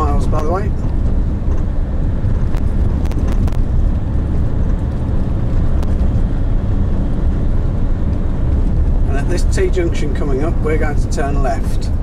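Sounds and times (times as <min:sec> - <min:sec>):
car road and engine rumble: 0:00.0 - 0:12.0.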